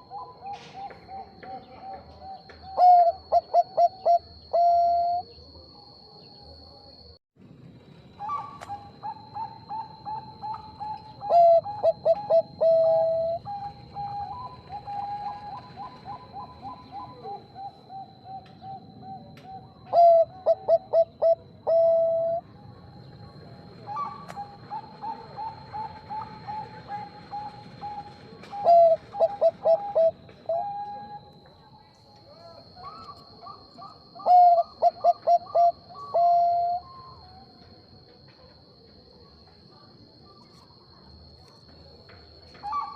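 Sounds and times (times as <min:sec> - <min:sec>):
dove cooing: 0:00.0 - 0:05.4, 0:08.2 - 0:22.4, 0:23.8 - 0:31.4, 0:32.7 - 0:37.6, 0:42.6 - 0:42.9.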